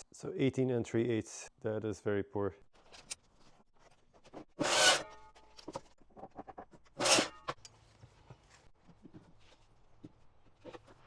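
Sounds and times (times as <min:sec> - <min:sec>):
zip-like rasping scrapes: 0:04.6 - 0:05.2, 0:07.0 - 0:07.4.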